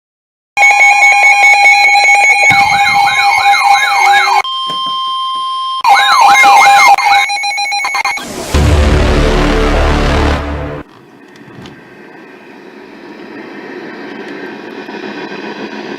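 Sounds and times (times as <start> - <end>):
yelping siren: 0.6 - 4.7, 5.7 - 8.3
rapid pulsing beep: 0.6 - 6.4, 7.0 - 8.3
steady alarm tone: 0.6 - 10.8.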